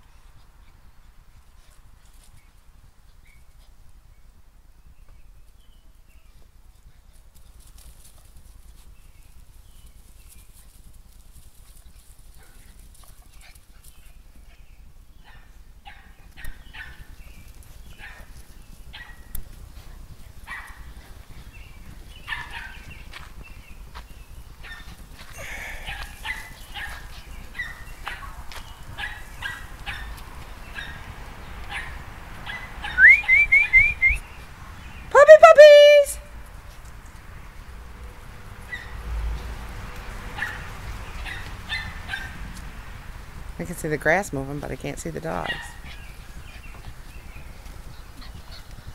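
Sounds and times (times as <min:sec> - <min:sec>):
puppies yipping: 0:18.9 - 0:23.3, 0:24.6 - 0:34.0, 0:38.6 - 0:39.0, 0:40.4 - 0:42.4.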